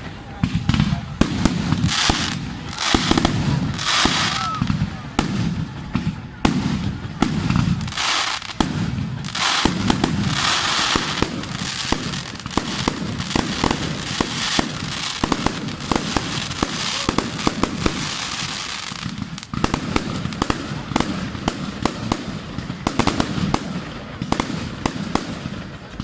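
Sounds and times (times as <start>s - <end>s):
fireworks bangs and pops: 0.0s - 26.0s
fireworks hissing crackle: 0.0s - 26.0s.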